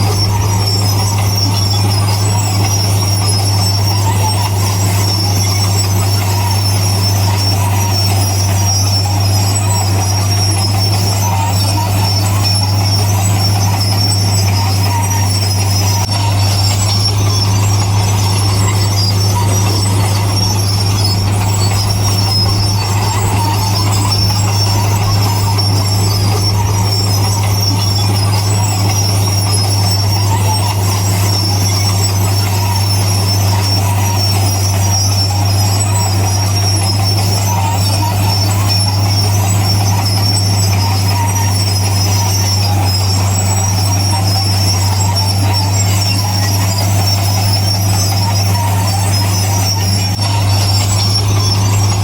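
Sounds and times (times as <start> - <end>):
high whine: 0.0 - 7.9, 11.0 - 36.3, 48.2 - 52.0
bulldozer diesel engine running: 0.0 - 52.0.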